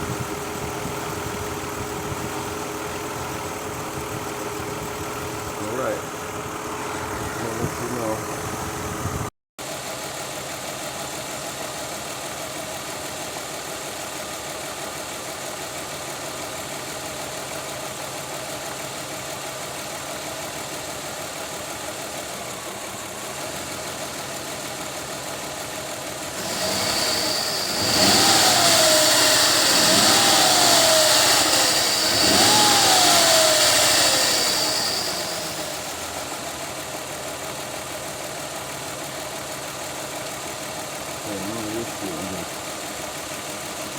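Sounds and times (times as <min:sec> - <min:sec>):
car engine idling and revving: 0:00.0 - 0:43.9
high steady whine: 0:26.4 - 0:36.5.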